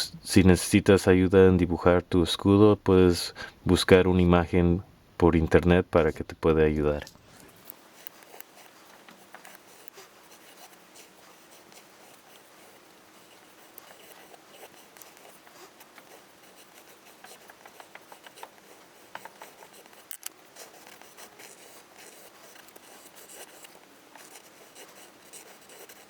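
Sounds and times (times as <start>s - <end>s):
pencil sketching on paper: 7.8s - 26.0s.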